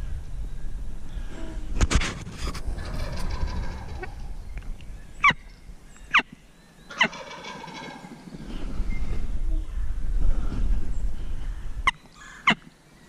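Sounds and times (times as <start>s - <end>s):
low rustling: 0.8s - 5.9s
sharp turkey calls: 2.8s - 8.5s.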